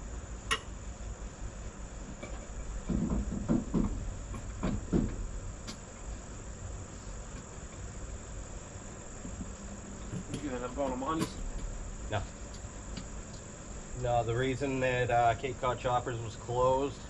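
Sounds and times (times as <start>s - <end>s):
crickets chirping: 0.0s - 17.0s
dull knocks: 2.2s - 5.8s.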